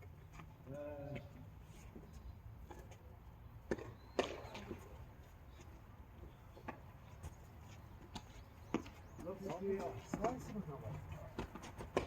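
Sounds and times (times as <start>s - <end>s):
tennis ball bouncing on court: 3.6s - 4.8s, 11.4s - 12.0s
tennis ball struck by rackets: 3.6s - 4.8s, 11.4s - 12.0s.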